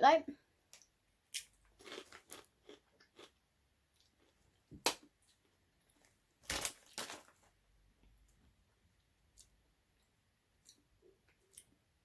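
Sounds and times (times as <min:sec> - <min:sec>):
chip crunching: 0:01.3 - 0:03.4.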